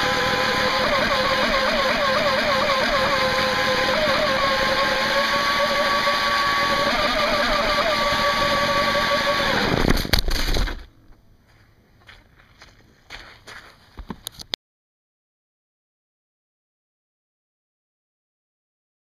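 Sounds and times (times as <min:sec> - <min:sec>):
electric motor whining: 0:00.0 - 0:09.9.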